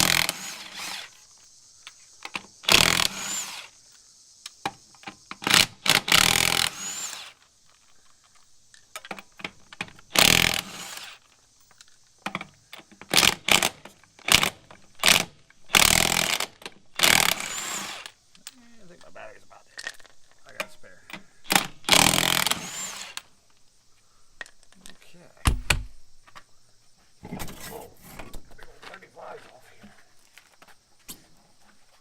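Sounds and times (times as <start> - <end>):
impact wrench rattling: 21.5 - 23.2.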